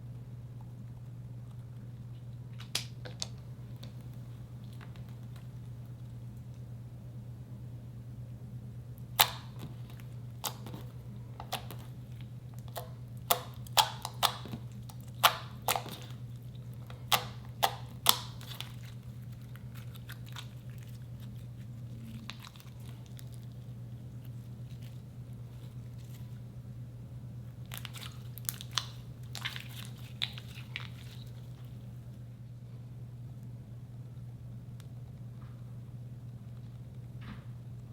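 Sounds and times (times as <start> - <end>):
slime popping and crackling: 9.2 - 26.4, 27.6 - 31.8.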